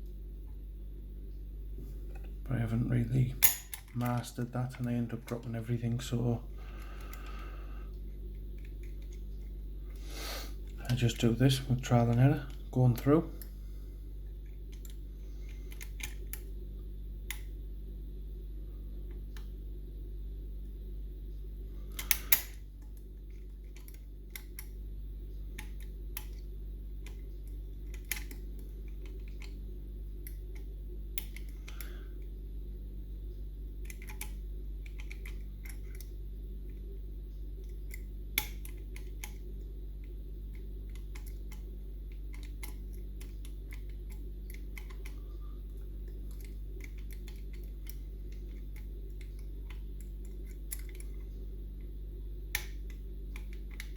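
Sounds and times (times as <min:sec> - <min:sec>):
low hum: 0:00.0 - 0:53.9
lock picks clicking in lock: 0:22.0 - 0:22.6, 0:33.8 - 0:36.1.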